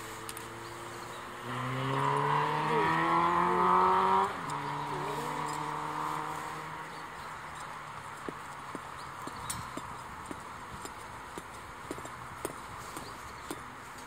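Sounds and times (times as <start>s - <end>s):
motor engine droning: 0.0s - 7.2s.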